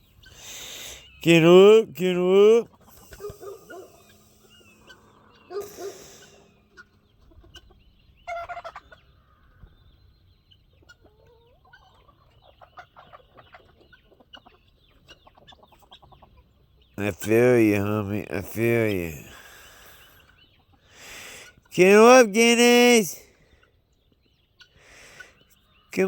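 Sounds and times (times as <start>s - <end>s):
guinea fowl and chickens calling: 0.0s - 1.2s, 2.6s - 17.0s, 19.4s - 21.7s, 23.3s - 25.9s.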